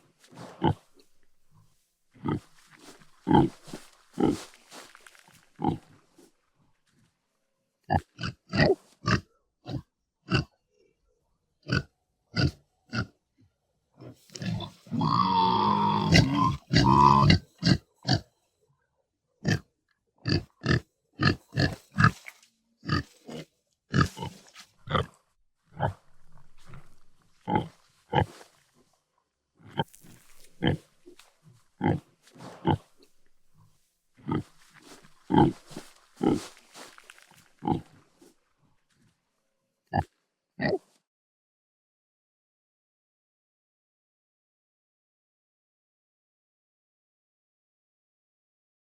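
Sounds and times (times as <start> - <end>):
pig grunting: 0.3 - 1.0, 2.2 - 4.8, 5.6 - 6.0, 14.0 - 18.3, 19.4 - 28.5, 29.6 - 38.0.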